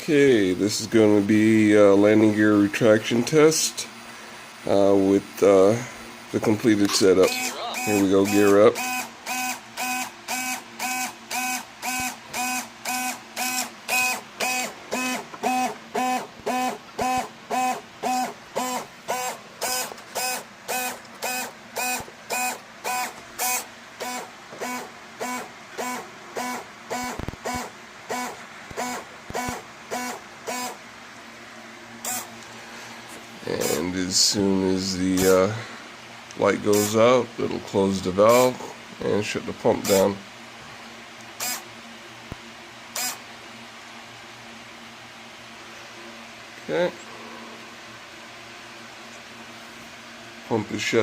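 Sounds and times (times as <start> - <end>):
small hydraulic pump pulsing: 7.2 - 30.8, 32.0 - 32.3, 41.4 - 41.6, 42.9 - 43.2.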